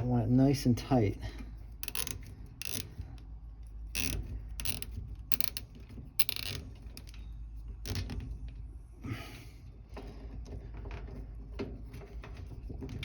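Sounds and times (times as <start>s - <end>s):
zip tie ratcheting: 1.8s - 3.0s, 3.9s - 7.2s.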